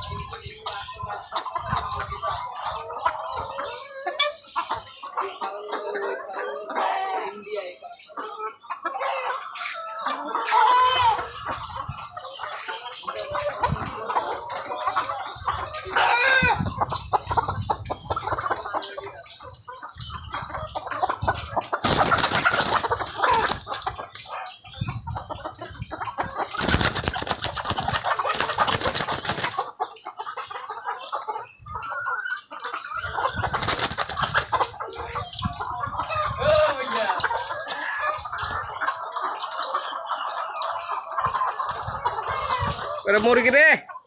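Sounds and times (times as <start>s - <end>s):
hens clucking and cackling: 0.0s - 44.0s.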